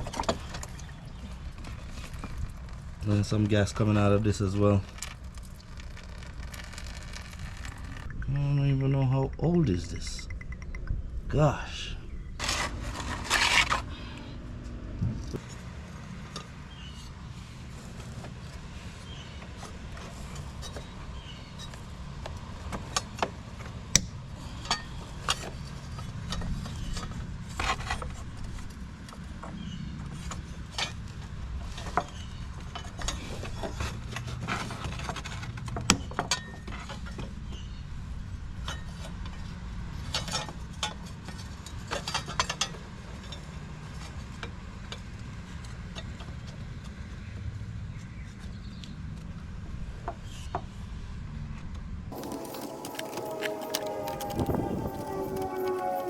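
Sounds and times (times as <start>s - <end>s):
steady low hum: 2.3s - 17.6s.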